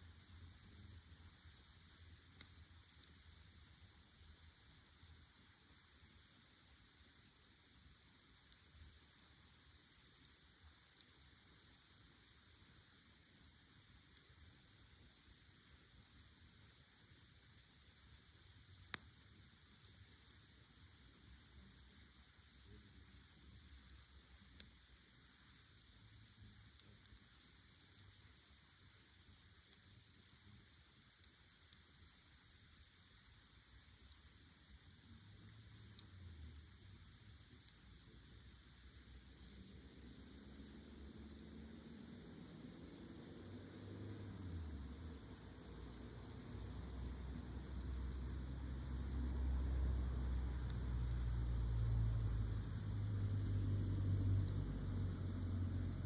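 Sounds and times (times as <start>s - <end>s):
crickets chirring: 0.0s - 56.0s.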